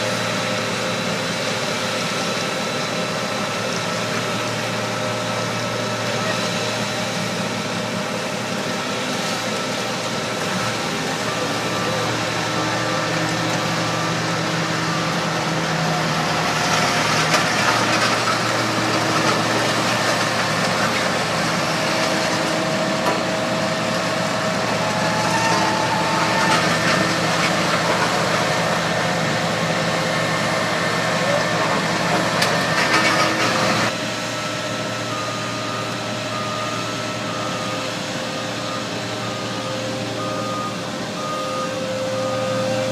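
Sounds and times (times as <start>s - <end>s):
diesel machinery running: 0.0s - 42.9s
backup alarm beeping: 35.0s - 42.9s.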